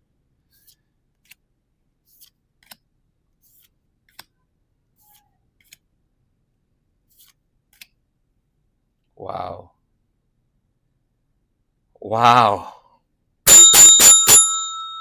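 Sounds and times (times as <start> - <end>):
cards sliding with paper swishes: 0.5 - 1.4, 2.0 - 2.8, 3.4 - 4.3, 5.0 - 5.8, 7.0 - 7.9.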